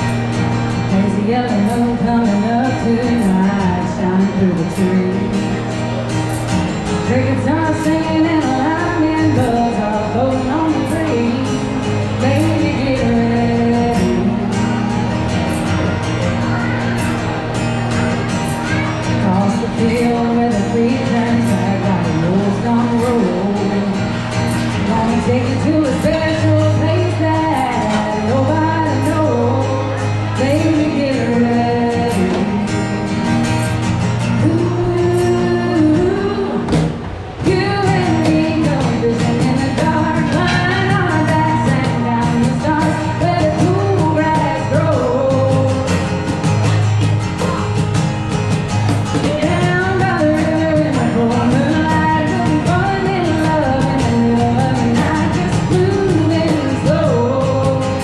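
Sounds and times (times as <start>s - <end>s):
acoustic guitar: 0.0s - 58.0s
person singing: 49.1s - 58.0s.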